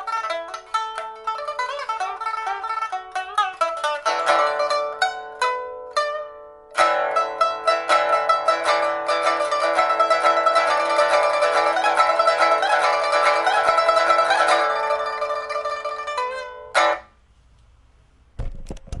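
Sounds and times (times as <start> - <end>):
pipa plucked notes and chord: 0.0 - 17.1
low thump: 18.4 - 19.0.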